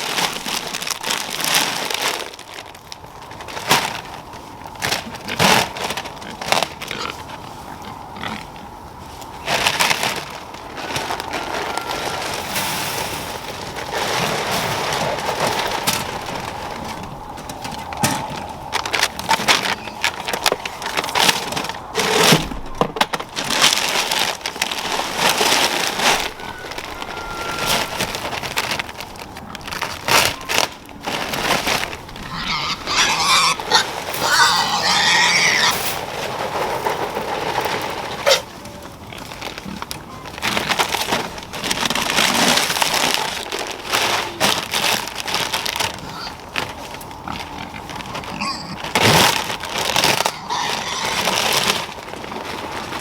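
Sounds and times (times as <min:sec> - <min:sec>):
dry feed crunching: 0:00.0 - 0:53.0
pigs grunting: 0:05.2 - 0:10.2, 0:23.4 - 0:36.3, 0:45.8 - 0:52.0.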